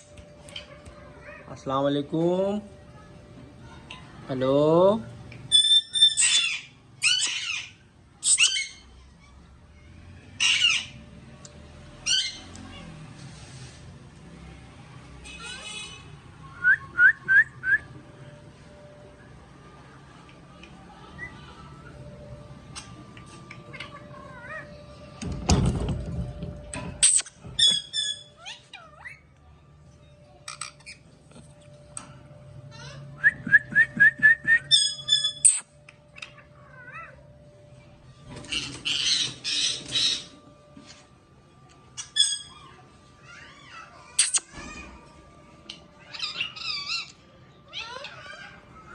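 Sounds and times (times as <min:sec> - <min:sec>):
parrot squawks and whistles: 0:05.5 - 0:08.8, 0:34.6 - 0:35.7, 0:44.2 - 0:44.5
parrot calling and whistling: 0:05.5 - 0:08.9, 0:27.0 - 0:29.2, 0:32.7 - 0:37.2, 0:38.4 - 0:40.4, 0:42.0 - 0:42.6, 0:43.7 - 0:44.5, 0:45.7 - 0:48.6.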